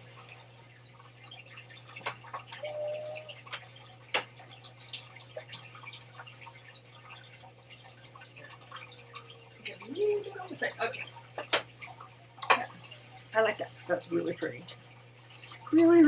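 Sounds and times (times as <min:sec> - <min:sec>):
electrical hum: 0:00.0 - 0:16.0
short faint tone: 0:02.6 - 0:03.4.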